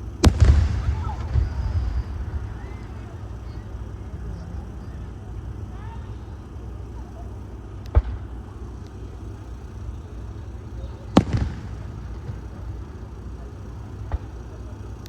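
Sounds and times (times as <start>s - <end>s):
loud firework bang: 0.0s - 4.4s, 7.9s - 8.4s, 11.1s - 12.6s
low background noise: 0.0s - 15.0s.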